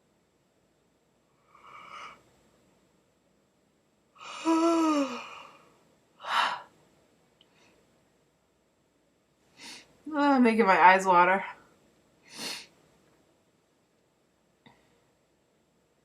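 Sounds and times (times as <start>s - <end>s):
person yawning: 4.2s - 5.6s
sharp breath: 12.3s - 12.7s.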